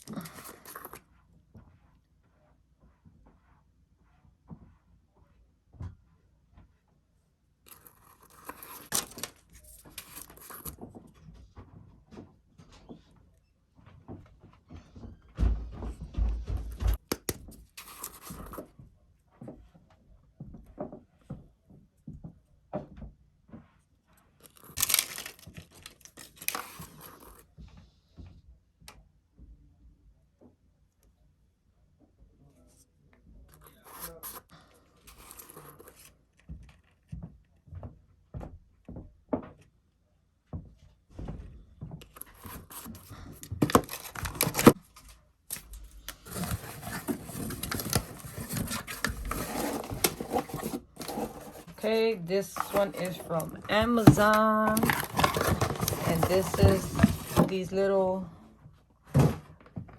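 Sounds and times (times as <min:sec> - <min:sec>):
packaging tearing and crinkling: 0:24.7 - 0:26.9, 0:43.5 - 0:44.8, 0:45.5 - 0:51.8, 0:52.5 - 0:57.5.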